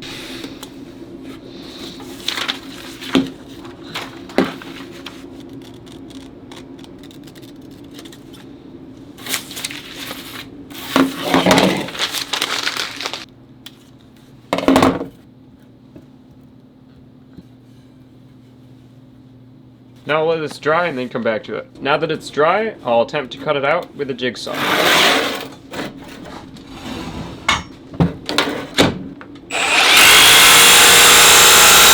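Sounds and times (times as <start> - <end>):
paper rustling and crinkling: 1.9 - 8.5, 9.2 - 13.3.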